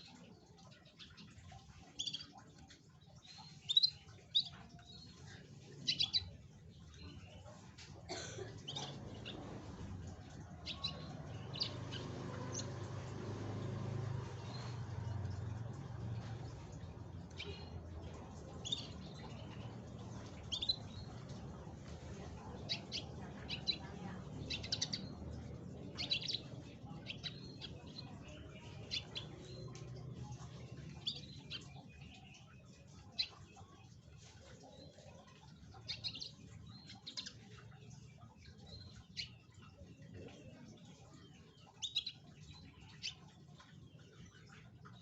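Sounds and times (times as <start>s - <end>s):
canary chirping: 0.0s - 7.8s, 8.6s - 40.3s, 41.2s - 45.0s
low steady hum: 0.0s - 34.2s.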